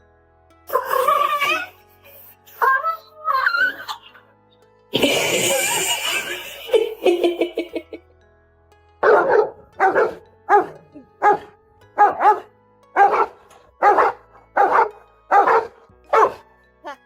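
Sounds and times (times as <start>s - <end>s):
dog barking: 9.0s - 16.4s.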